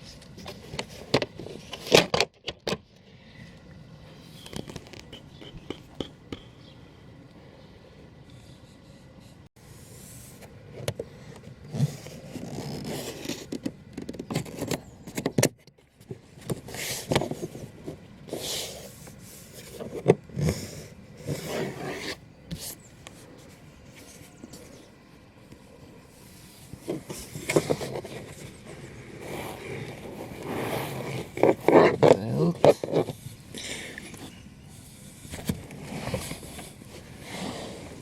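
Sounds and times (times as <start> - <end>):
rubbing and scraping on car trim: 10.1 - 24.9, 26.2 - 38.0.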